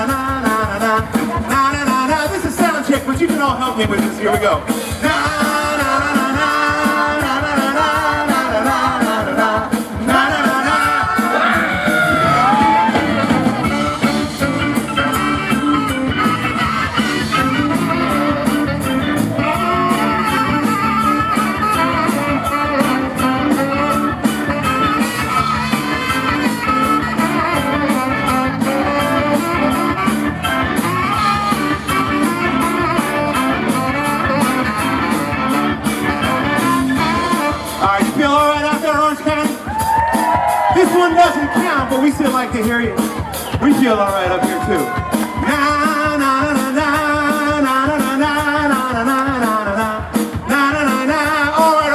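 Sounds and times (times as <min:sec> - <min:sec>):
person singing: 0:00.0 - 0:39.6, 0:44.7 - 0:51.9
drums: 0:00.0 - 0:51.9
live rock band playing: 0:00.0 - 0:51.9
electric guitar: 0:03.9 - 0:40.8.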